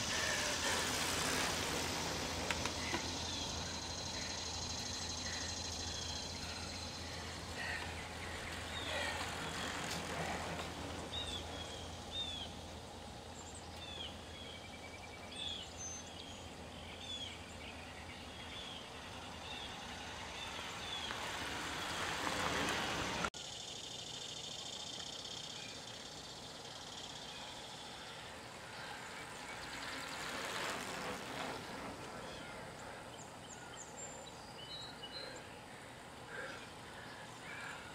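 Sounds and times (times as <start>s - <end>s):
rushing noise: 0.0s - 11.6s
small birds chirping: 0.0s - 37.9s.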